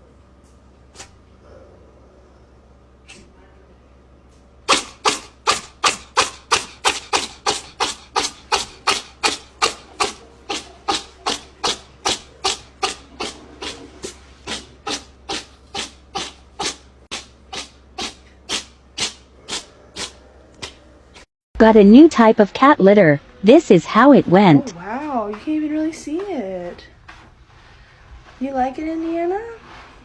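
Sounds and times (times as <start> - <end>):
rhythmic rubbing strokes: 4.7 - 20.8.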